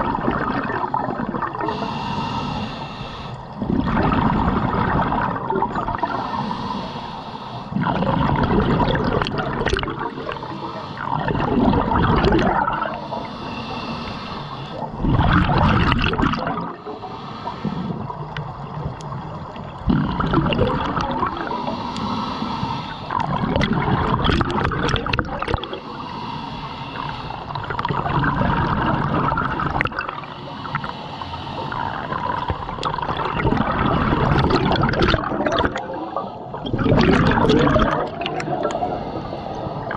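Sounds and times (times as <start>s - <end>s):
bubbles gurgling: 0.0s - 1.9s, 3.6s - 6.3s, 7.7s - 13.3s, 14.7s - 16.9s, 17.9s - 21.8s, 23.0s - 25.8s, 27.5s - 30.8s, 31.7s - 39.9s
diver breathing through regulator: 1.5s - 3.9s, 5.9s - 8.9s, 9.8s - 18.4s, 19.9s - 24.2s, 25.5s - 28.1s, 30.0s - 32.8s, 33.6s - 39.9s.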